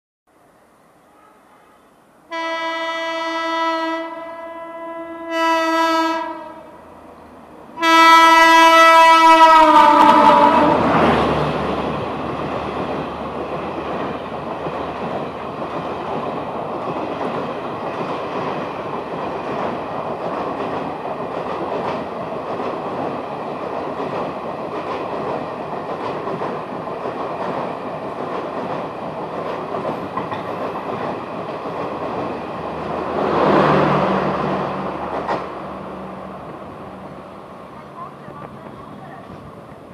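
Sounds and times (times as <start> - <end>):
train coaches rolling past: 0.3 - 39.9
locomotive horn blasts: 1.1 - 6.7, 7.8 - 10.8.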